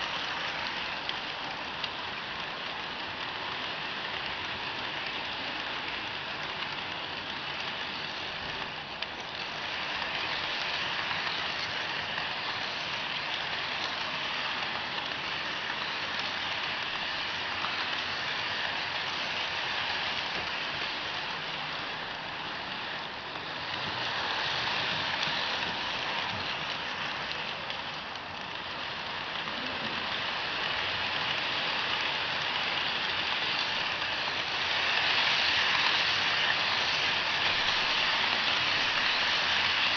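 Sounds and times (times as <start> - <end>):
model train rolling on track: 0.0 - 39.9.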